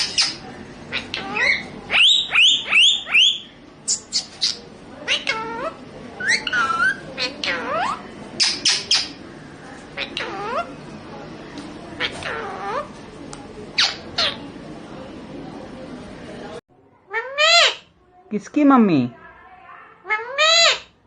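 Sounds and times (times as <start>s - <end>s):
parrot squawking: 0.0s - 9.2s, 9.9s - 10.8s, 12.0s - 12.9s, 13.7s - 14.4s, 17.1s - 17.9s, 20.0s - 21.0s.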